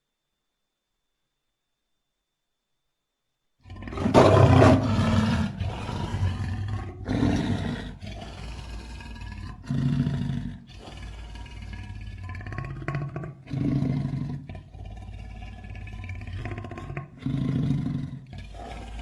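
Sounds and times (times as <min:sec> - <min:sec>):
monster roars: 0:03.7 - 0:14.4.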